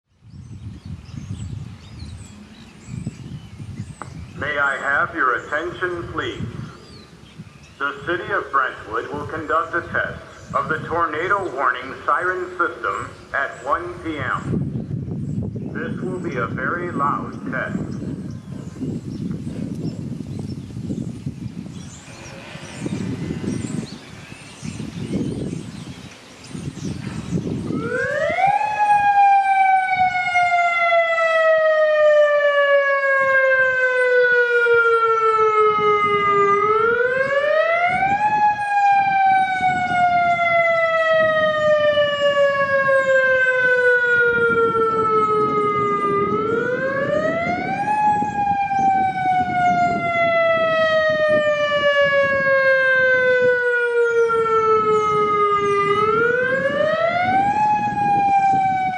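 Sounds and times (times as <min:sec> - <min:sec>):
tornado warning siren: 0:00.2 - 0:58.9.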